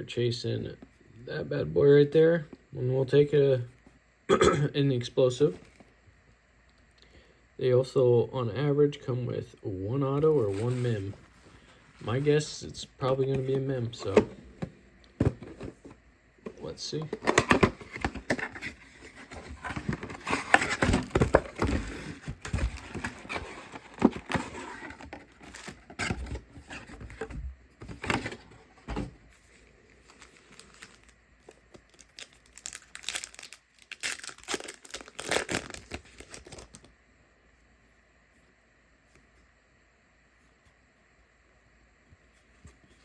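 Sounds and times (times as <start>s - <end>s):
plastic wrapping crinkling and tearing: 30.0s - 36.9s.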